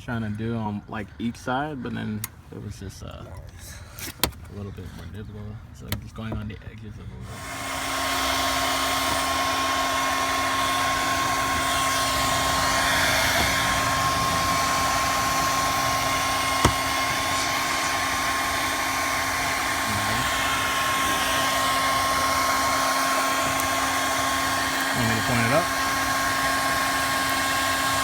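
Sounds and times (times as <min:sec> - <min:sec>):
heat gun blowing: 0:07.2 - 0:28.0.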